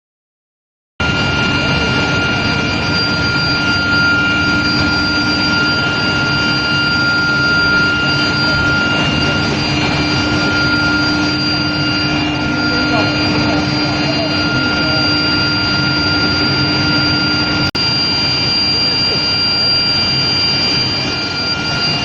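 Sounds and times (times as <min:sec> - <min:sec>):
dense machinery noise: 0:01.0 - 0:22.0
high steady whining tones: 0:01.0 - 0:22.0
loud industrial hum: 0:01.0 - 0:22.0.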